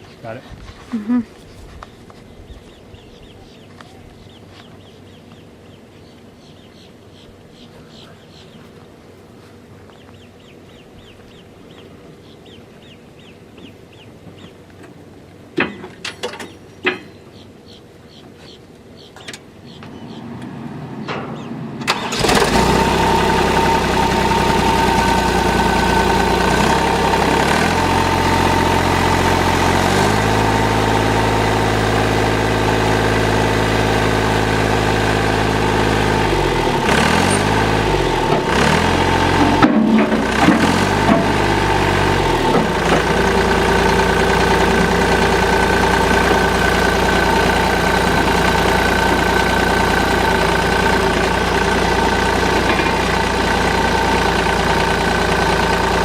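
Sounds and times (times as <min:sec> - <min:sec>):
diesel engine running: 0:19.9 - 0:56.0.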